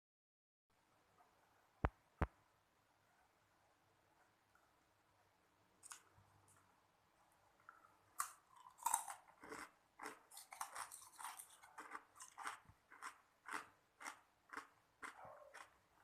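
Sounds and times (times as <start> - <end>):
ice cubes crunching when chewed: 8.2 - 15.8.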